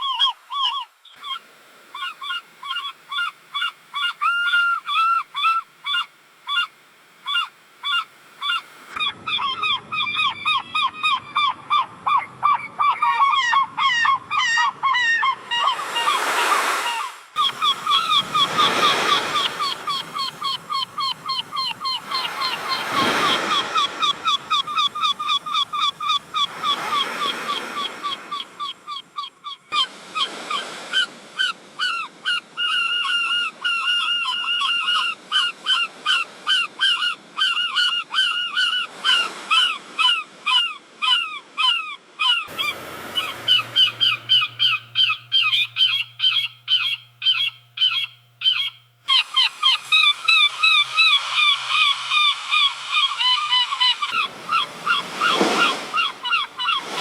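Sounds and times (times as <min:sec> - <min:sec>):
seagulls squawking: 0:07.3 - 0:29.9, 0:31.4 - 0:57.0
waves washing: 0:15.5 - 0:29.2, 0:42.5 - 0:46.4, 0:49.1 - 0:57.0.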